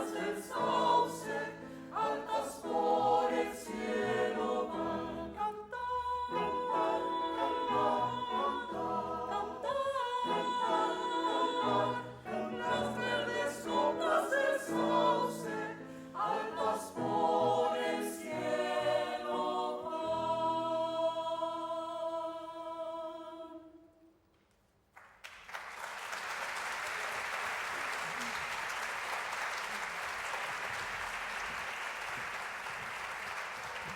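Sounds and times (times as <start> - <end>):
choir singing: 0.0 - 23.9
audience applause: 25.0 - 33.9.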